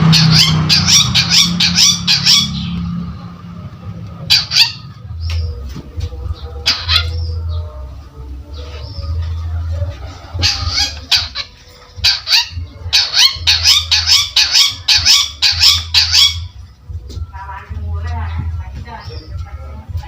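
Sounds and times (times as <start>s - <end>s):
bird singing harsh raspy calls: 0.0s - 3.0s, 4.2s - 5.6s, 6.3s - 7.7s, 10.3s - 16.6s.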